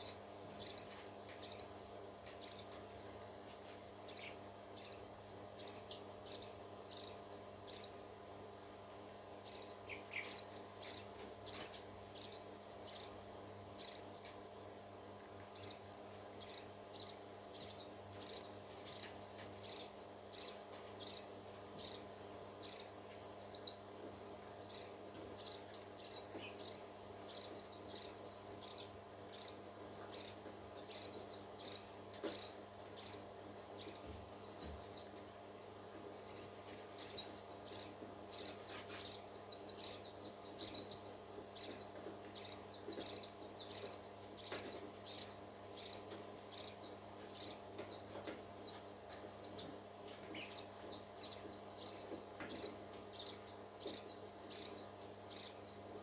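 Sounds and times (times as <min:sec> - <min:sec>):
low steady hum: 0:00.0 - 0:56.0
parrot chick peeping: 0:00.0 - 0:56.0.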